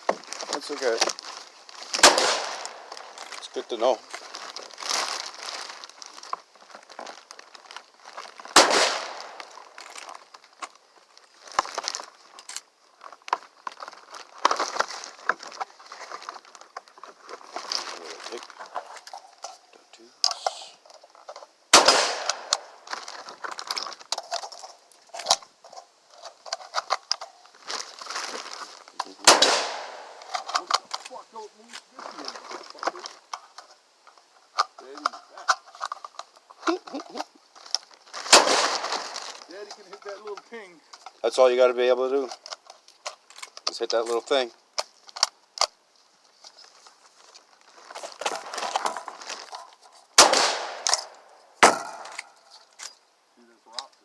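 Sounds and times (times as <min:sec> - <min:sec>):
faint rustling: 0:00.0 - 0:54.0
shotgun shots with echo: 0:02.0 - 0:03.0, 0:08.6 - 0:09.5, 0:21.7 - 0:22.6, 0:29.2 - 0:30.3, 0:38.3 - 0:39.1, 0:50.2 - 0:52.1.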